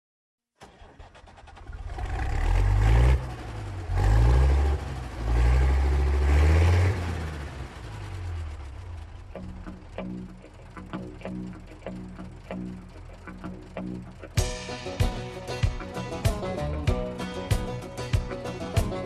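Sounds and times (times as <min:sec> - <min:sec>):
heavy engine revving: 0:00.6 - 0:19.0.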